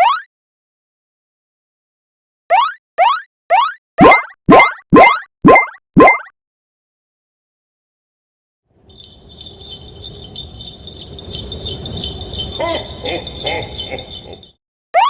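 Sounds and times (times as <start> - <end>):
continuous jingling: 8.8 - 14.6.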